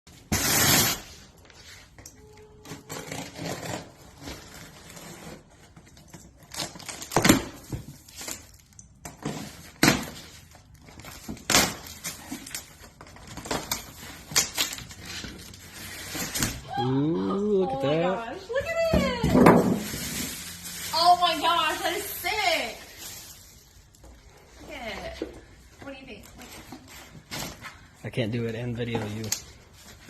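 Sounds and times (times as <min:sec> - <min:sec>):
rustling: 0:18.5 - 0:28.0.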